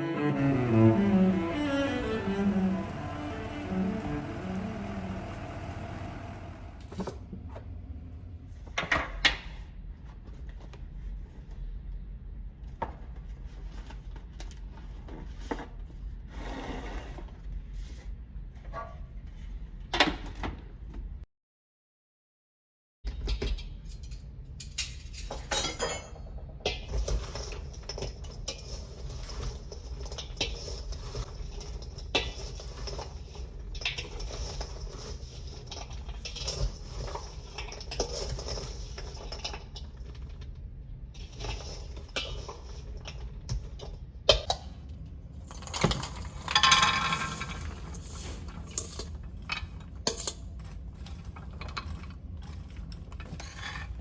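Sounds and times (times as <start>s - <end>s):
dishes and utensils clinking: 45.5s - 54.0s.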